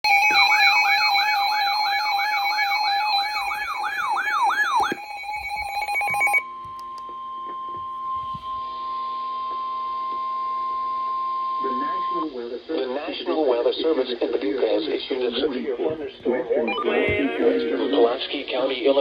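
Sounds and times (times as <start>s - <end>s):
electronic emergency alert tones: 0.0s - 8.6s, 16.6s - 18.4s
quiet steady electronic tone: 0.1s - 19.0s.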